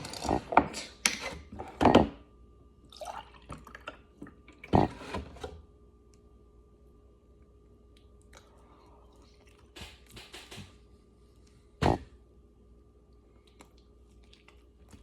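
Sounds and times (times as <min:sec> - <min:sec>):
milk sloshing and pouring: 0:02.8 - 0:05.0.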